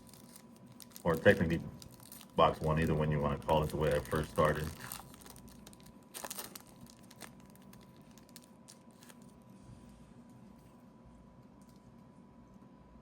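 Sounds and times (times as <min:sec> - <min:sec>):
plastic wrapping crinkling: 0:00.0 - 0:09.6.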